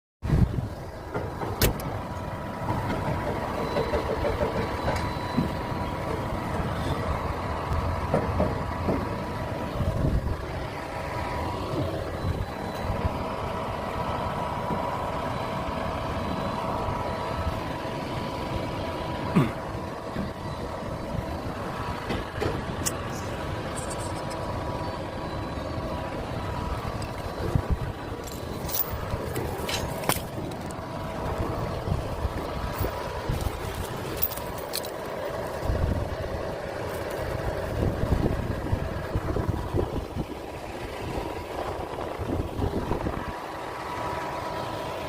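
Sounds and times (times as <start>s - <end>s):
crane machinery humming: 0.3s - 45.0s.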